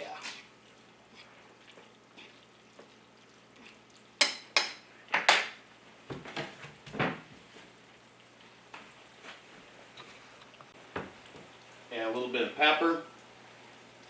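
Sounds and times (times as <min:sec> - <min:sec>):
noodles being stirred: 0:00.0 - 0:05.1
utensil clinking against a pan: 0:04.2 - 0:05.5.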